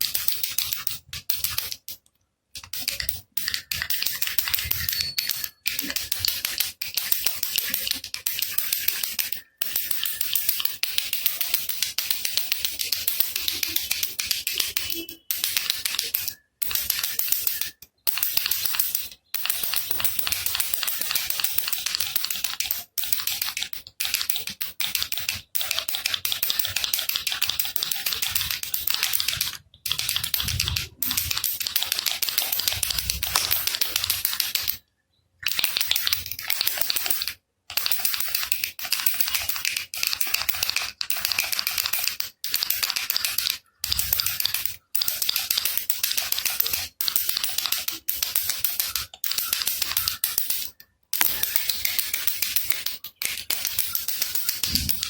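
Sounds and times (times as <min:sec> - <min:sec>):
baby rattle shaken: 0:02.7 - 0:11.8, 0:24.1 - 0:34.8, 0:35.5 - 0:55.0.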